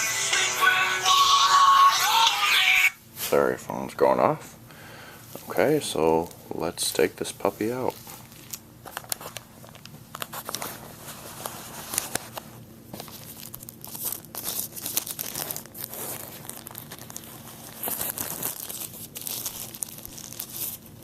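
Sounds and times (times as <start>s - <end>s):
packaging crinkling and tearing: 7.8s - 21.0s.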